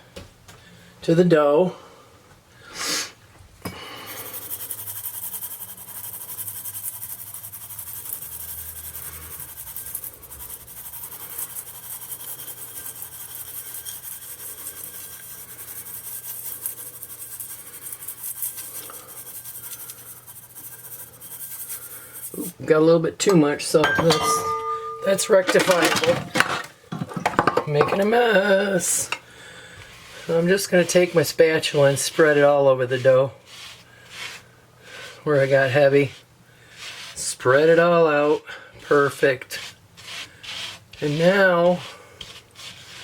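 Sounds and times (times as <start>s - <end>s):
sugar sprinkled over dough: 4.1s - 22.6s.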